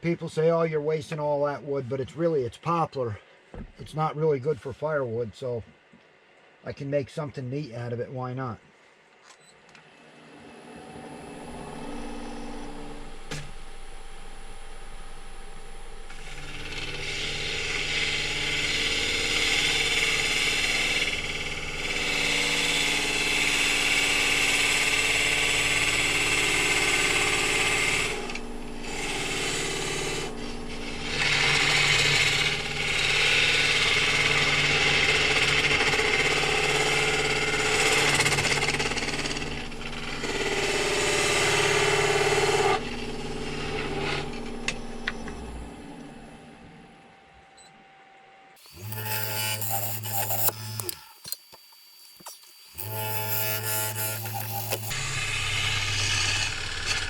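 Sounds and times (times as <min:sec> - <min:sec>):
wood lathe humming: 0:10.9 - 0:45.2, 0:48.6 - 0:57.0
turning tool cutting wood: 0:16.1 - 0:44.8, 0:48.6 - 0:57.0.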